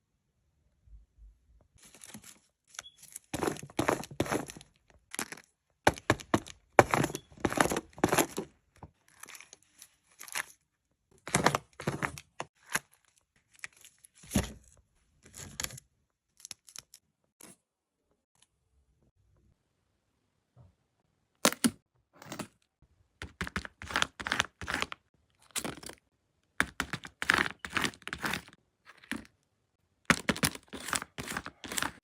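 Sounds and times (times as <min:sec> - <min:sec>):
paper crinkling and tearing: 0:30.1 - 0:32.0.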